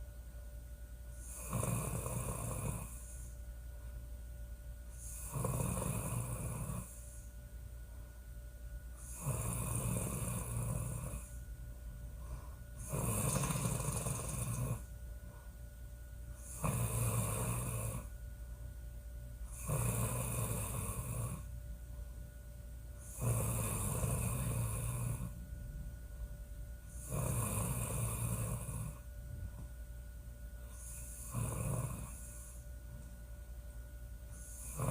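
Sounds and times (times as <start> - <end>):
quiet breathing: 1.0 - 29.8, 30.4 - 34.9
woman snoring loudly: 1.2 - 3.3, 5.0 - 7.1, 9.0 - 11.4, 12.8 - 14.9, 16.4 - 18.1, 19.5 - 21.5, 23.0 - 25.4, 26.9 - 29.0, 30.8 - 32.6, 34.4 - 34.9.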